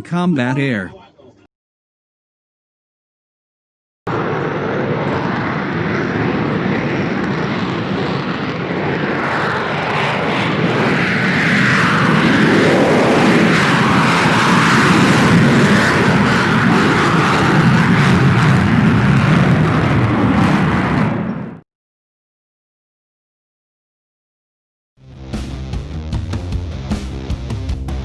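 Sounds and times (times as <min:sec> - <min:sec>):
jet engine roar: 0:04.1 - 0:21.6.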